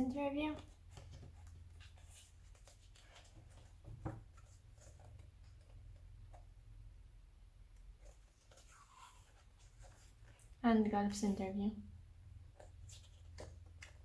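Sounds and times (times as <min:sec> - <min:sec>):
magazine pages rustling: 0:00.5 - 0:06.4, 0:07.9 - 0:10.6, 0:12.5 - 0:14.0.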